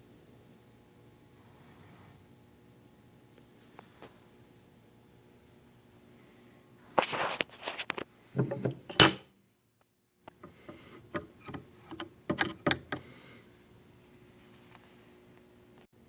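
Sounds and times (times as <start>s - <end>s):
tools knocking and scraping wood: 8.4s - 9.3s, 10.3s - 13.2s.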